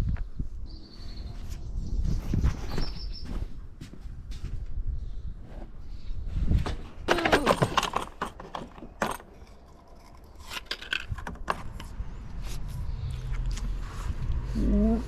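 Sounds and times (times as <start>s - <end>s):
metallic clinks and knocks: 7.1s - 12.0s.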